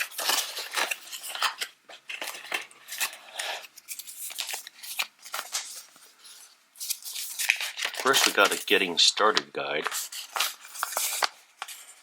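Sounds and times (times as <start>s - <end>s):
paper rustling: 0.0s - 12.0s.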